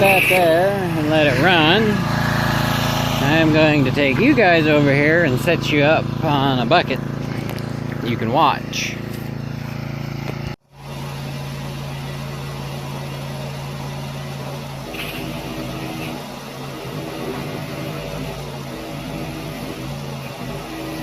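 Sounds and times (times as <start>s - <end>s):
engine running: 0.0s - 21.0s.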